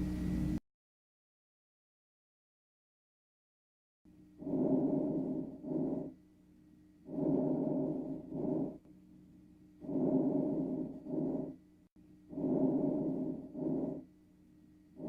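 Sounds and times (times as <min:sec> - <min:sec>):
breath sounds through stethoscope: 0:04.4 - 0:06.2, 0:07.1 - 0:08.8, 0:09.8 - 0:11.6, 0:12.3 - 0:14.0.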